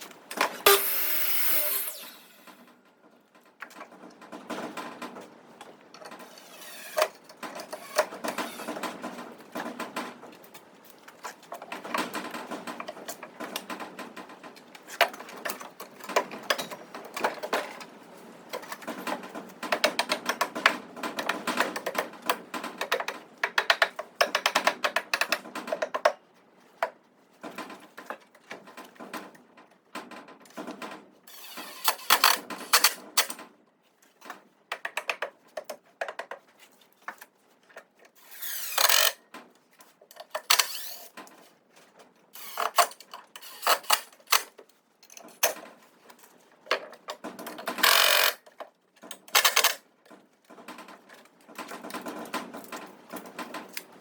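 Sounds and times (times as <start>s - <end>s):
power tool running: 0.6s - 2.6s.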